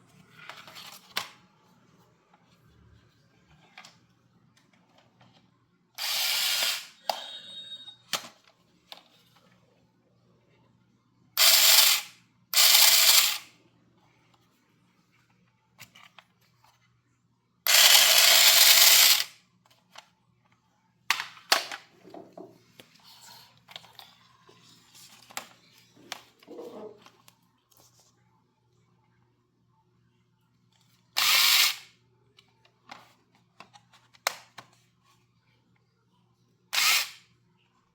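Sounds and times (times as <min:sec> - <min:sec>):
toy hissing bursts: 0:06.0 - 0:07.0, 0:11.4 - 0:13.5, 0:17.7 - 0:19.3, 0:31.2 - 0:31.9.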